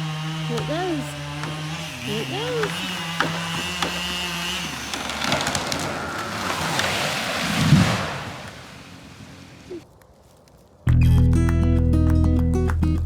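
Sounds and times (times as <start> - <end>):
chainsaw running: 0.0 - 7.4
tree trunk cracking and splintering: 0.0 - 8.8
tree crashing through branches: 1.1 - 9.6.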